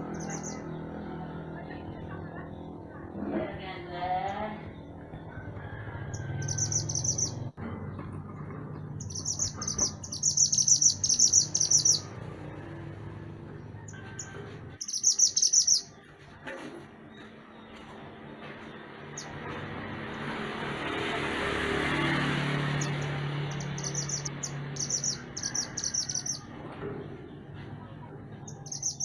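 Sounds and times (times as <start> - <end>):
songbird trilling: 6.4 - 7.4, 9.0 - 12.2, 14.8 - 15.9, 22.8 - 26.5, 28.4 - 29.0.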